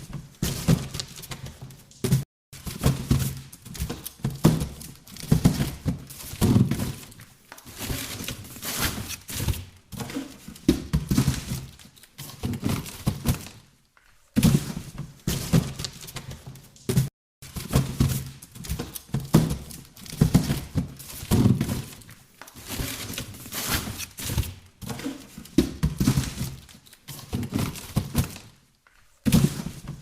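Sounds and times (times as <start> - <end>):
boxes thunking and scuffing: 0.0 - 30.0.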